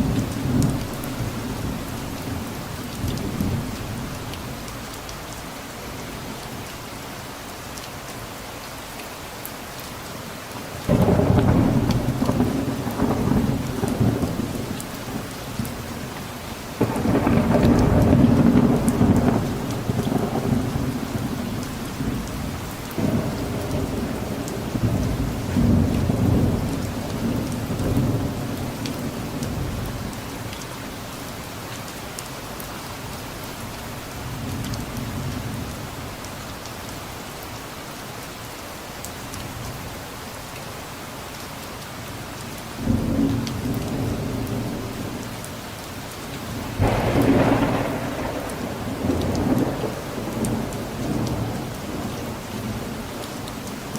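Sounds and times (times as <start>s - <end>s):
steady rain: 0.0s - 53.9s
rolling thunder: 10.9s - 16.1s, 16.8s - 30.1s, 46.4s - 53.1s.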